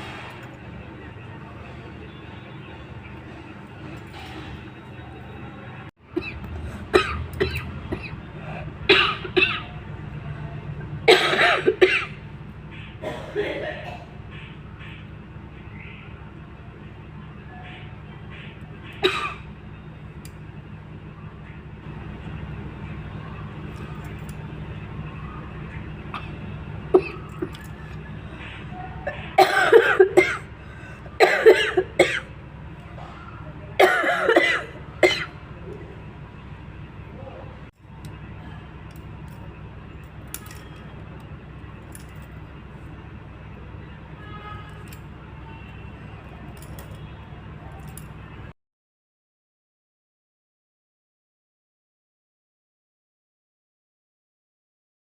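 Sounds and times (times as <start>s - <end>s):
woman coughing: 6.2s - 8.2s, 8.9s - 9.8s, 11.1s - 12.2s, 13.0s - 14.2s, 19.0s - 19.4s, 26.1s - 27.6s, 29.1s - 30.5s, 31.2s - 32.3s, 33.8s - 35.3s.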